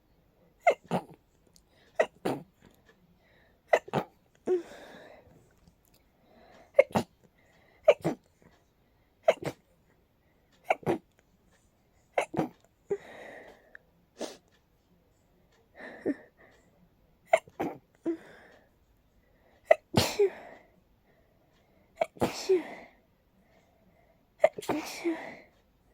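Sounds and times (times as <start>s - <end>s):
breaths: 1.6s - 2.0s, 2.8s - 3.7s, 4.5s - 9.2s, 10.2s - 10.6s, 12.9s - 14.6s, 15.7s - 16.8s, 18.0s - 19.7s, 20.3s - 24.4s, 25.0s - 25.6s
person sneezing: 6.8s - 7.1s, 19.7s - 20.5s, 22.0s - 22.8s, 24.4s - 25.4s.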